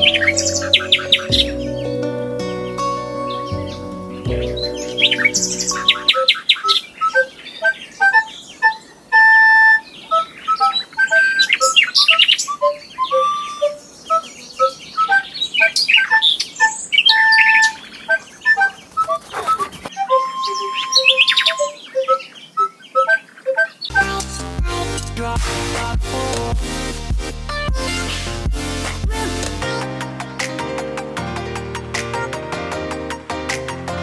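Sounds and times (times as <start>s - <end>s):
instrumental music: 0.0s - 6.2s, 19.9s - 21.8s, 23.9s - 34.0s
songbirds chirping and whistling: 0.0s - 23.9s.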